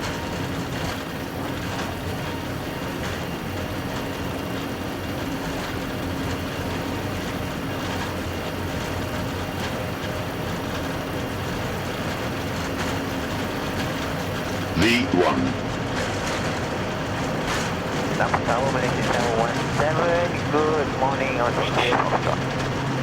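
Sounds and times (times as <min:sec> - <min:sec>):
jet engines rumbling on takeoff: 0:16.8 - 0:23.0.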